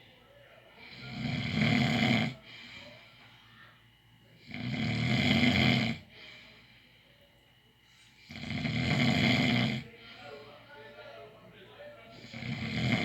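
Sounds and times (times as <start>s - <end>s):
quiet breathing: 0.0s - 4.8s, 5.9s - 13.0s
loud snores: 0.9s - 2.4s, 4.4s - 6.1s, 8.2s - 9.9s, 12.2s - 13.0s.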